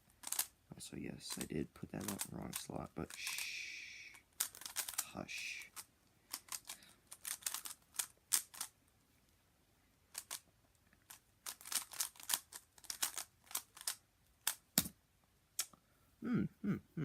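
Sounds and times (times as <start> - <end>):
puzzle cube plastic clicks: 0.1 - 0.6, 1.2 - 8.8, 10.1 - 14.9.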